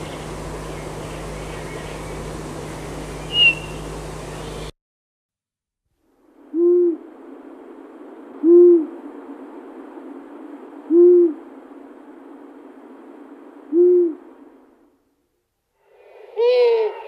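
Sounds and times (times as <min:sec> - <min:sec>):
faint steady hiss: 0:00.0 - 0:04.7, 0:05.9 - 0:17.0
owl hooting: 0:03.2 - 0:04.5, 0:06.5 - 0:07.1, 0:08.4 - 0:09.1, 0:10.9 - 0:11.5, 0:13.7 - 0:14.5, 0:15.8 - 0:17.0.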